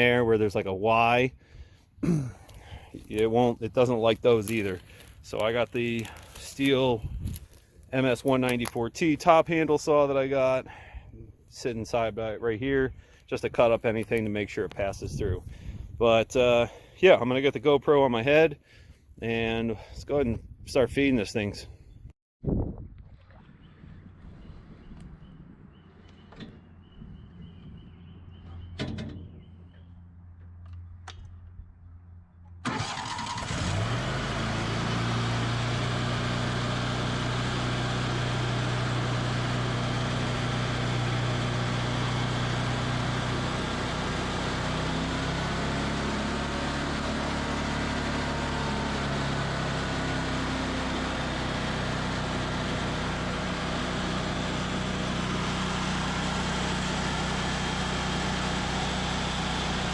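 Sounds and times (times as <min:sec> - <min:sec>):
wood chipper running: 0:00.0 - 0:17.6, 0:32.6 - 0:59.9.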